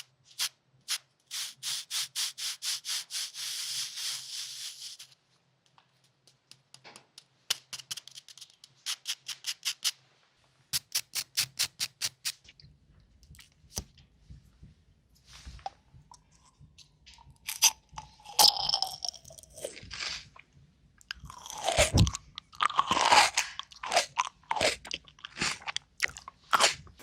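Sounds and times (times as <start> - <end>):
rubbing and scratching strokes: 0.0 - 5.2, 7.6 - 10.2.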